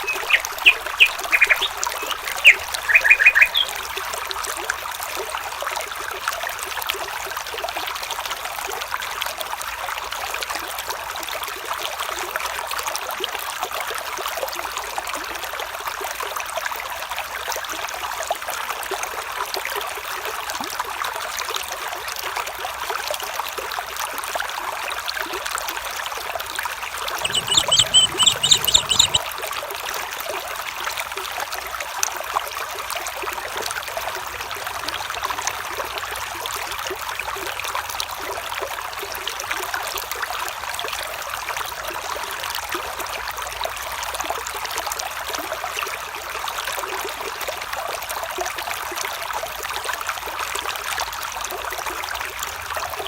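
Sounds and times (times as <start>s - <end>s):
bird calling high repeated notes: 0.0s - 3.8s, 27.2s - 29.2s
stream flowing: 0.0s - 8.2s, 26.4s - 29.2s.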